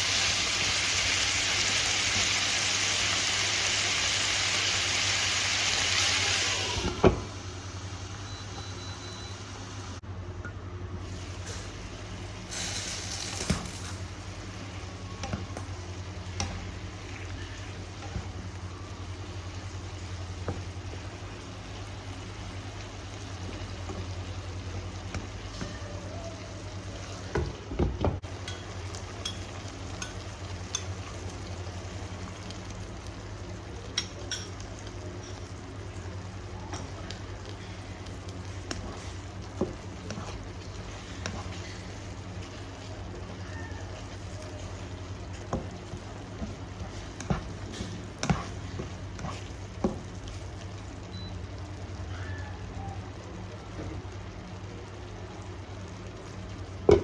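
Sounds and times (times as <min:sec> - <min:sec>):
food cooking in a pan: 0:00.0 - 0:10.0, 0:10.9 - 0:57.0.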